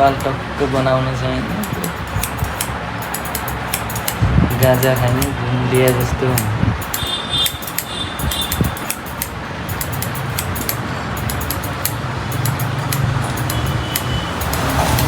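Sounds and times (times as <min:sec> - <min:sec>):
background hum and hiss: 0:00.0 - 0:15.0
scissors snipping: 0:01.5 - 0:15.0.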